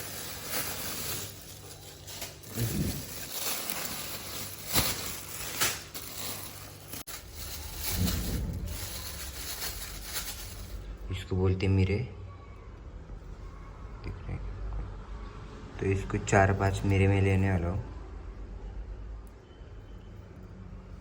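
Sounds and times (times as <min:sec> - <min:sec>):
hands rustling spices: 0:00.0 - 0:10.8.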